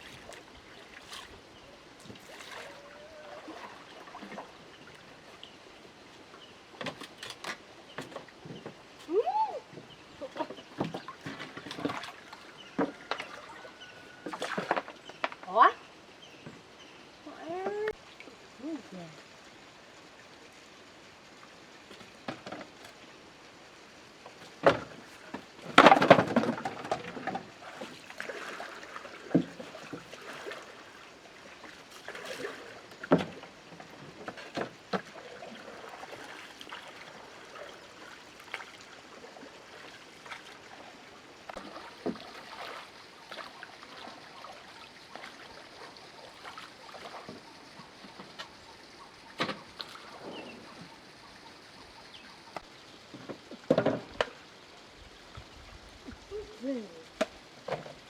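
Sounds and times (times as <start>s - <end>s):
water sloshing and splashing: 0.0s - 5.8s, 9.8s - 15.6s, 24.2s - 58.0s
knocks and clunks: 24.6s - 27.5s, 53.1s - 54.3s.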